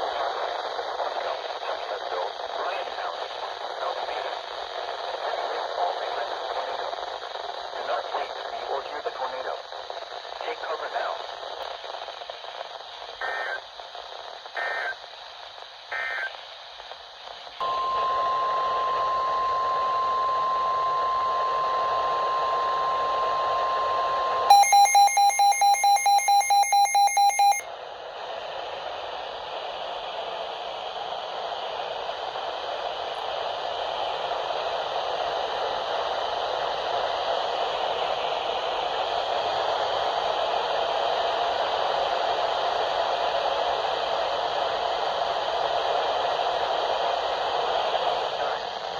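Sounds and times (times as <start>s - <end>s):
radio hiss: 0.0s - 24.5s, 45.8s - 48.9s
steady warning alarm tone: 17.6s - 27.6s
fast electronic beeping: 17.7s - 27.6s.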